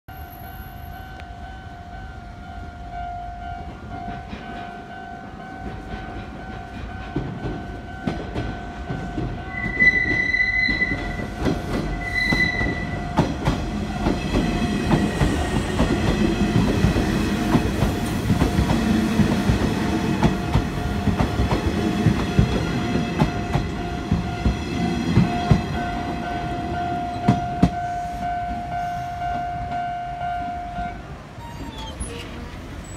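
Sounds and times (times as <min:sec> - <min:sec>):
train horn blasts: 0:09.5 - 0:13.2.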